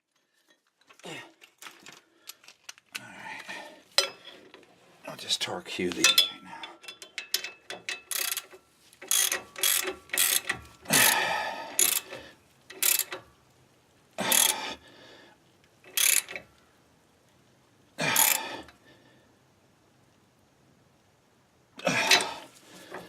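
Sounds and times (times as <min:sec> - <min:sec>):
torque wrench ratcheting: 0:06.0 - 0:13.2, 0:14.2 - 0:14.6, 0:15.9 - 0:16.5, 0:18.1 - 0:18.5.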